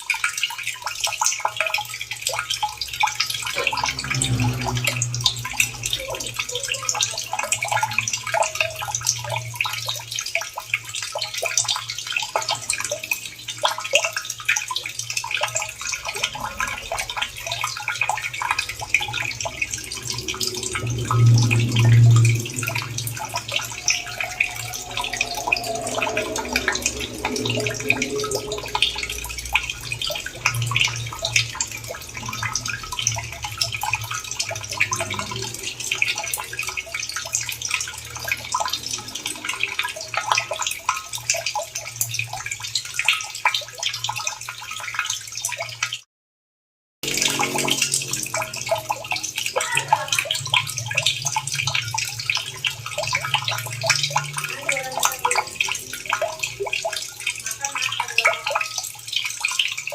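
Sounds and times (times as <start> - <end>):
running water splashing: 0.0 - 45.9, 47.0 - 59.9
low rumble: 3.0 - 9.7, 15.4 - 40.2.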